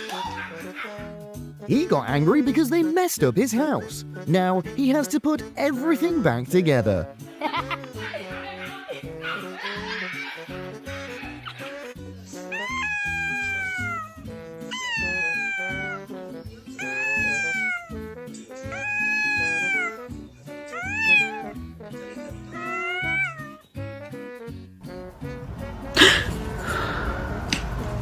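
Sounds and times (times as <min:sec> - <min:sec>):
background music: 0:00.0 - 0:28.0
cat meowing: 0:12.4 - 0:16.2, 0:16.8 - 0:23.6.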